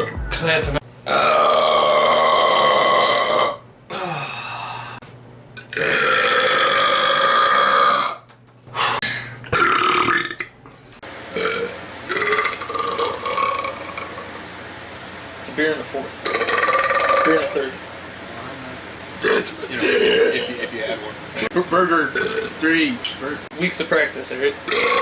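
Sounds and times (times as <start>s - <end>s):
man belching loudly: 1.1s - 3.6s, 5.6s - 8.2s, 9.5s - 10.5s, 11.4s - 14.3s, 16.2s - 17.6s, 19.2s - 20.7s, 22.1s - 22.6s, 24.7s - 25.0s.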